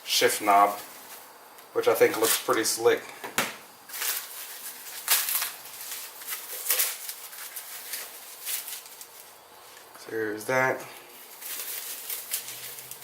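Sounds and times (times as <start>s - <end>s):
packaging rustling and crinkling: 3.9s - 9.9s, 11.1s - 13.0s.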